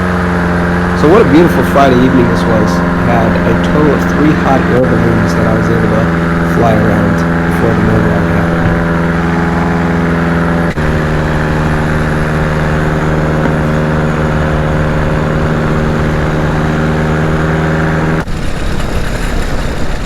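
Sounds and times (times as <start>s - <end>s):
paramotor engine and propeller: 0.0s - 20.0s.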